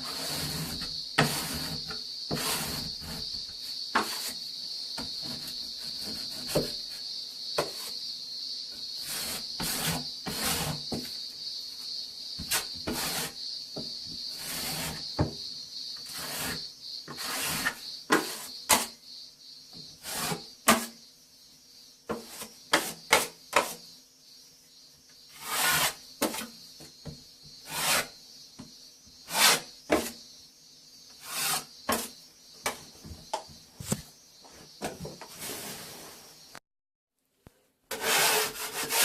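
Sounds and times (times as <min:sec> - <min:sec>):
metal blade scraping plaster wall: 0:00.0 - 0:04.4, 0:05.0 - 0:07.0, 0:09.0 - 0:11.0, 0:12.4 - 0:13.4, 0:14.3 - 0:15.1, 0:16.0 - 0:19.0, 0:19.9 - 0:21.0, 0:25.3 - 0:26.4, 0:27.6 - 0:28.2, 0:29.2 - 0:30.2, 0:31.2 - 0:32.2, 0:37.9 - 0:39.0.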